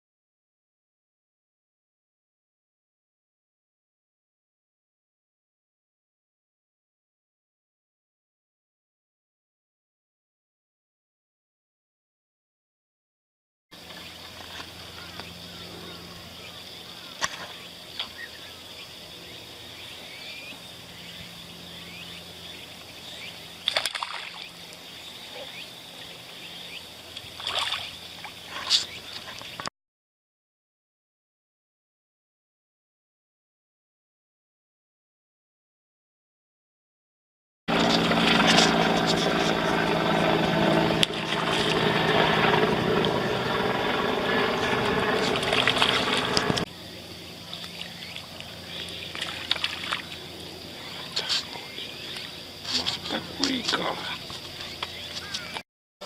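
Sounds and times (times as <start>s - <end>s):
engine running steadily: 37.7s - 55.6s
high-pitched hum: 37.7s - 55.6s.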